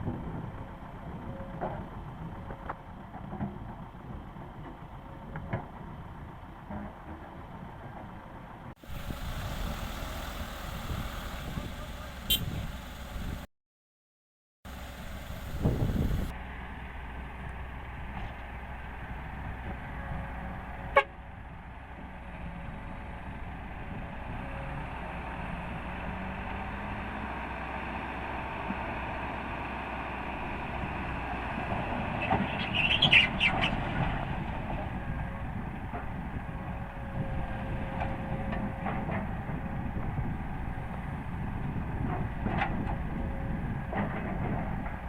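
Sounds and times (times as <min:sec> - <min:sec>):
diesel construction machinery running: 0:00.0 - 0:13.5, 0:14.7 - 0:45.0.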